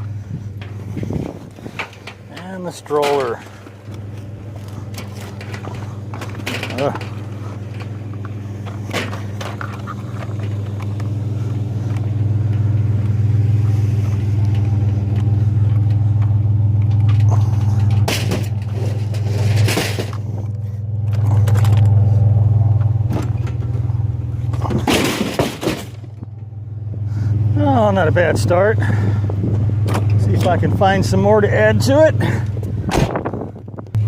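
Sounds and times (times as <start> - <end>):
vehicle engine humming: 0.0 - 34.0
knocks and clatters: 0.5 - 22.0, 22.6 - 26.5.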